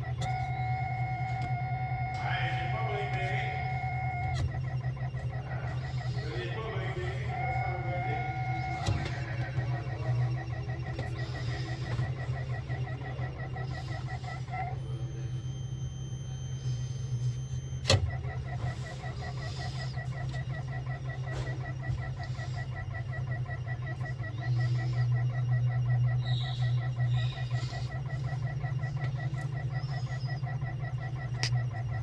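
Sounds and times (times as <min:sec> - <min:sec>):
refrigerator fan humming: 0:00.0 - 0:32.0
fast pulsing tick: 0:18.6 - 0:32.0.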